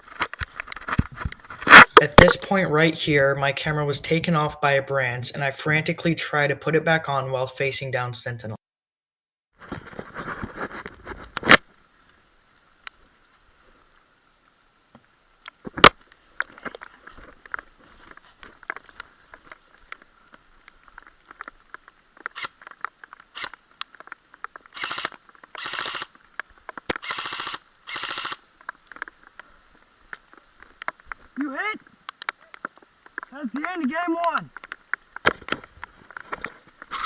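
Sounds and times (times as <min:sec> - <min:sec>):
airsoft rifle full-auto bursts: 0:24.8 - 0:26.1, 0:27.0 - 0:28.4.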